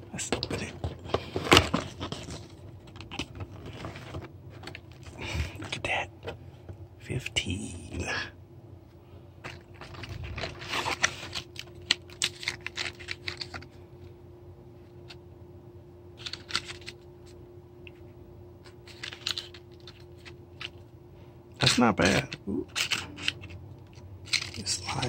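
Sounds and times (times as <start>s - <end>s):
packaging crinkling and clicking: 0.3s - 5.8s, 9.4s - 13.8s, 16.2s - 17.4s, 18.6s - 20.8s, 21.6s - 25.0s.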